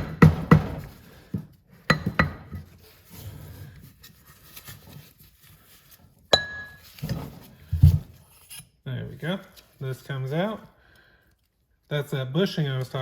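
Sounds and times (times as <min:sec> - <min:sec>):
hammer knocking on metal: 0:01.9 - 0:02.6.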